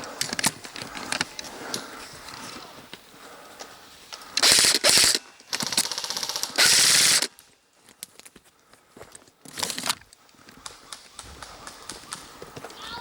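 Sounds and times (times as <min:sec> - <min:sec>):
airsoft gun full-auto bursts: 0:04.4 - 0:07.4.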